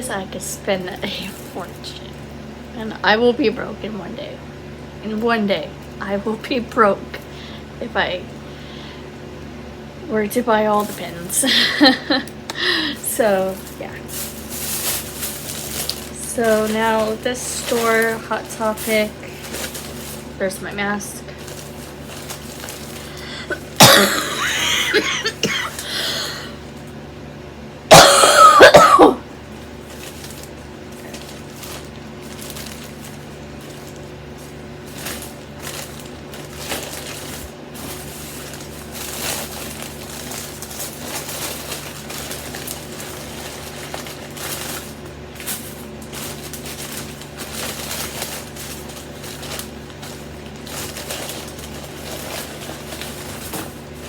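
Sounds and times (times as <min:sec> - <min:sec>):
quiet rustling: 0:13.0 - 0:23.3
person coughing loudly: 0:23.4 - 0:26.6, 0:27.9 - 0:29.2.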